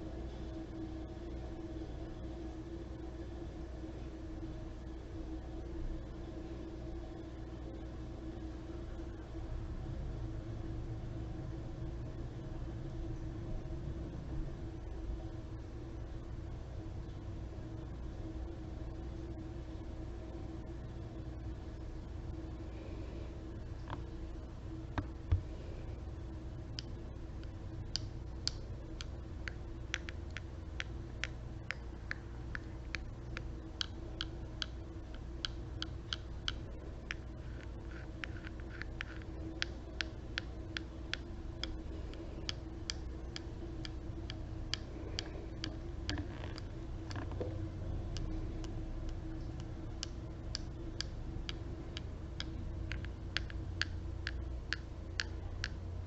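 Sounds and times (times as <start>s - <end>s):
steady low hum: 0.0s - 56.0s
crisp tapping clicks: 26.8s - 55.8s.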